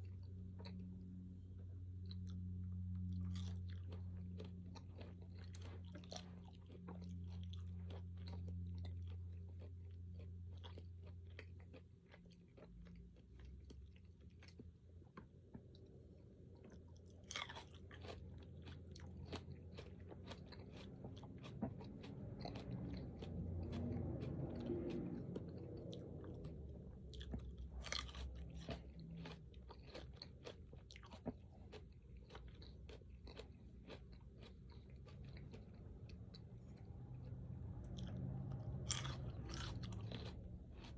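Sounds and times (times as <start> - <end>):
person chewing crunchy food: 0.0 - 40.9.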